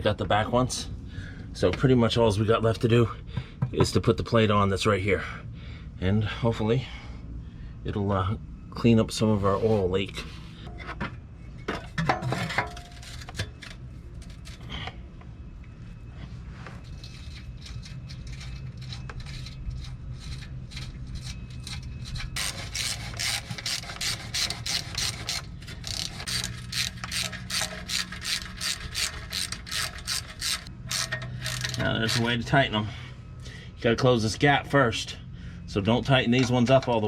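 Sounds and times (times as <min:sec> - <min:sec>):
low steady hum: 0:00.0 - 0:37.0
handling clatter and rubbing: 0:16.0 - 0:32.5
hand ratchet clicking: 0:22.4 - 0:32.3.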